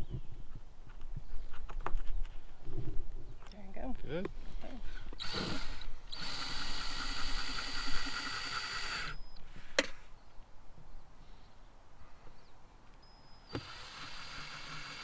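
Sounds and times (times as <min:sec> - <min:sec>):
cordless drill whine: 0:05.1 - 0:09.4, 0:13.0 - 0:15.0.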